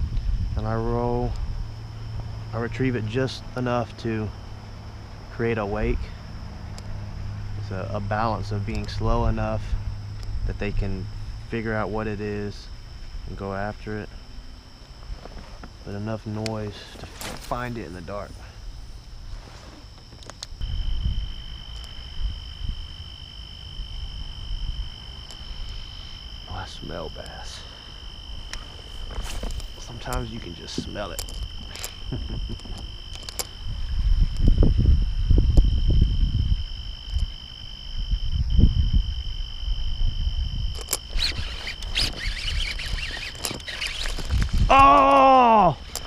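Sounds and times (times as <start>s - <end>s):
low rumbling on microphone: 0.0s - 3.6s, 27.5s - 43.0s
low uneven rumble: 0.0s - 37.3s
crickets trilling: 0.0s - 46.0s
sharp clicks: 28.5s - 33.6s.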